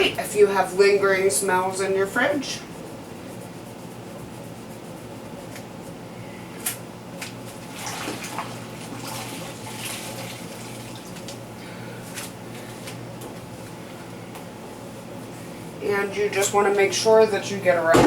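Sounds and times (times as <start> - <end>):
steady low hum: 0.0 - 18.0
wet towel wiping and swishing: 7.4 - 11.4.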